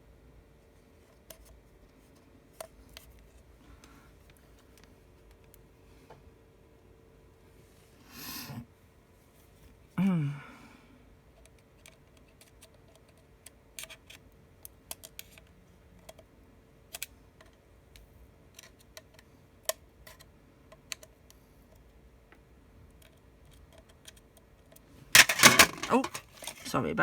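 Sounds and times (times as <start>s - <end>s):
faint steady hum: 0.0s - 27.0s.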